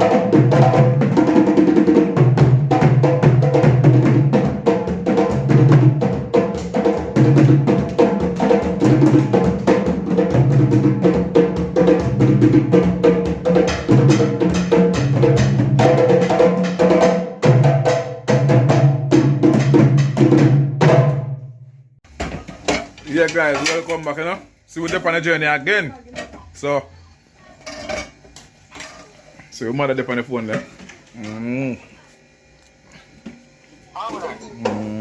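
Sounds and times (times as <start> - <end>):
music with drum beat and bass: 0.0 - 21.4.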